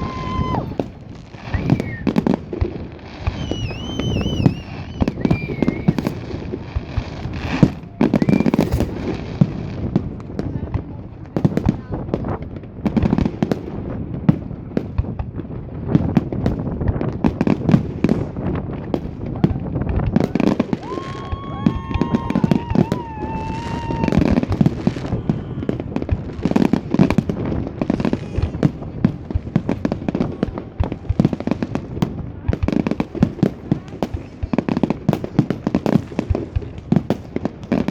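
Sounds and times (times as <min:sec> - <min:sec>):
firework whistling: 0:00.0 - 0:09.5, 0:20.2 - 0:28.9
fireworks bangs and crackles: 0:00.0 - 0:37.9.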